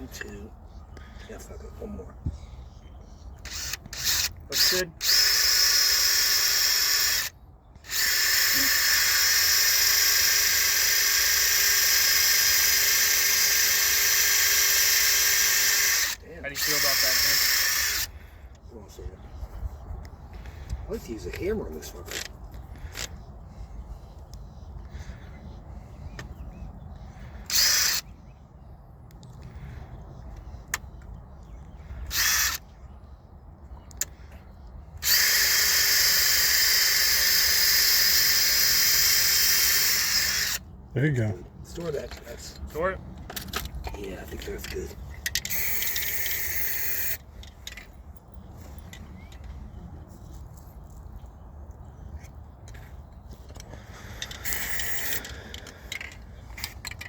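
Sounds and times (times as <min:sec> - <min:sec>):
power drill boring into concrete: 0:03.5 - 0:18.1, 0:27.4 - 0:28.0, 0:32.0 - 0:32.6, 0:35.0 - 0:40.6, 0:45.4 - 0:47.2, 0:54.4 - 0:55.6.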